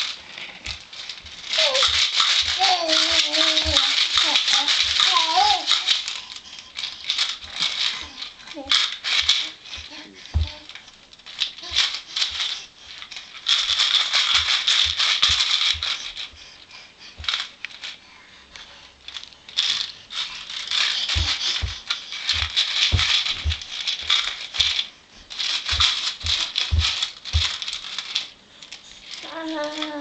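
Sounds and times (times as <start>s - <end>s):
toy rattle shaking: 0.0s - 18.0s, 18.7s - 30.0s.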